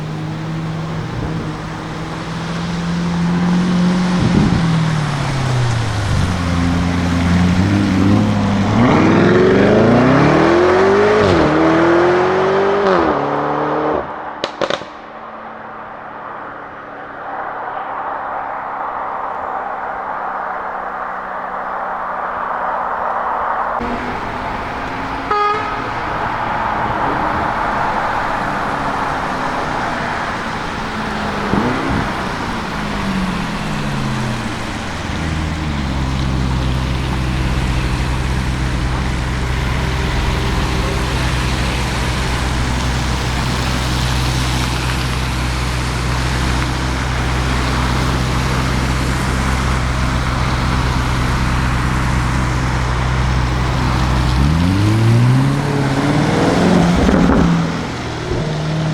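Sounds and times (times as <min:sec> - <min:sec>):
car engine idling with deep note: 0:00.0 - 0:10.0, 0:23.8 - 0:58.9.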